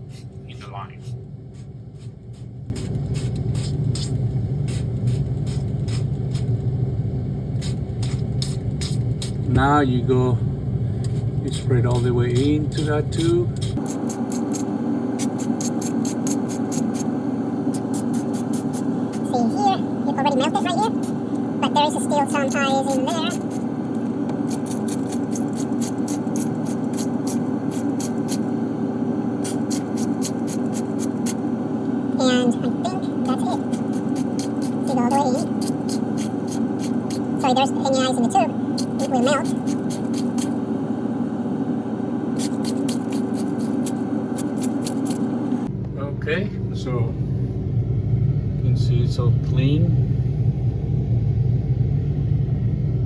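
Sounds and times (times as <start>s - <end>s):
steady low hum: 0.0s - 53.0s
spray bottle squirts: 1.6s - 6.5s, 7.6s - 9.4s, 13.6s - 17.1s, 17.7s - 19.3s, 22.9s - 23.7s, 24.4s - 28.6s, 29.4s - 31.5s, 33.3s - 37.7s, 38.8s - 40.6s, 42.4s - 45.3s.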